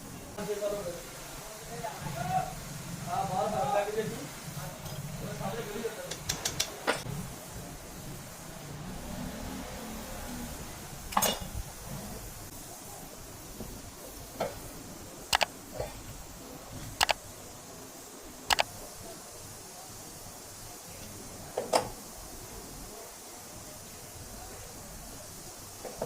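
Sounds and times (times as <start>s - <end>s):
faint steady hiss: 0.0s - 26.0s
tools clicking and knocking: 6.1s - 7.0s.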